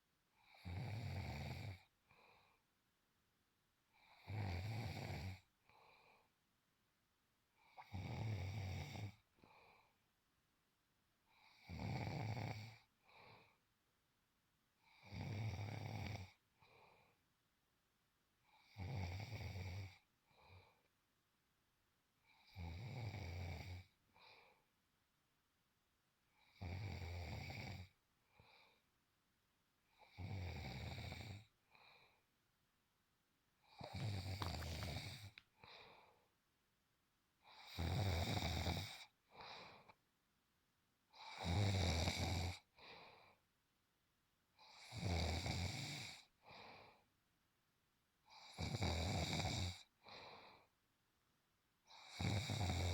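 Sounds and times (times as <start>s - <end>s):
man snoring: 0.4s - 1.8s, 4.0s - 5.5s, 7.7s - 9.2s, 11.4s - 12.9s, 14.9s - 16.4s, 18.6s - 20.0s, 22.4s - 23.9s, 26.4s - 27.9s, 30.0s - 31.5s, 33.7s - 35.4s, 37.5s - 39.1s, 41.2s - 42.6s, 44.6s - 46.3s, 48.3s - 49.9s, 51.9s - 52.9s.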